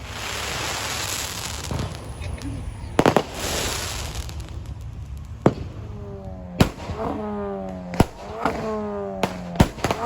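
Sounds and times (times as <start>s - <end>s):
fireworks bangs: 0.0s - 10.0s.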